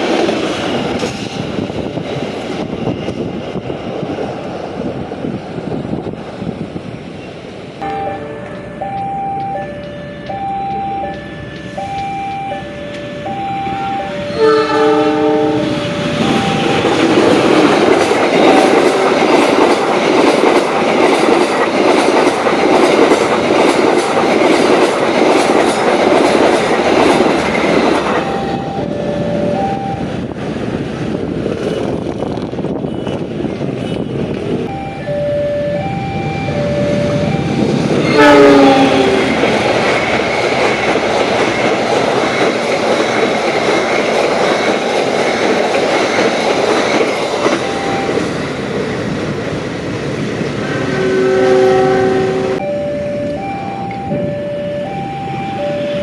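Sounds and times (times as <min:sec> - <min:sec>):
train wheels clacking: 0:00.0 - 0:03.6, 0:14.0 - 0:29.7, 0:37.0 - 0:51.2
train horn: 0:07.8 - 0:09.0, 0:09.6 - 0:17.1, 0:36.5 - 0:39.6, 0:50.6 - 0:52.6
level crossing warning signal: 0:07.8 - 0:19.1, 0:27.9 - 0:30.3, 0:34.6 - 0:39.6, 0:47.4 - 0:48.3, 0:50.8 - 0:56.0.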